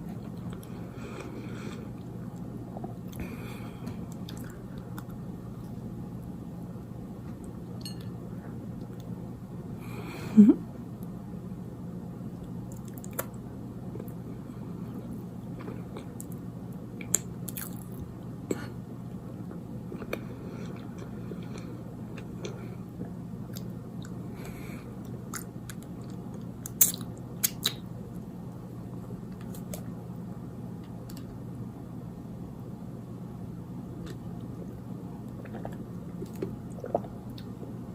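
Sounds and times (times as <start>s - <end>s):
steady low hum: 0.0s - 37.9s
person chewing: 0.2s - 5.2s, 17.0s - 18.0s, 25.0s - 27.8s, 35.4s - 37.6s.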